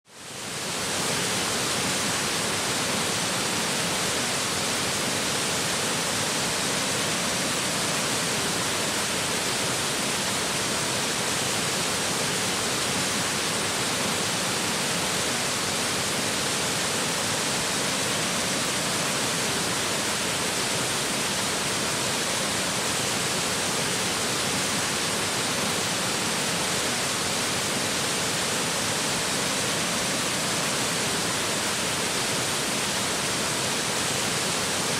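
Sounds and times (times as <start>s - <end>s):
waterfall rushing over rock: 0.1s - 34.9s.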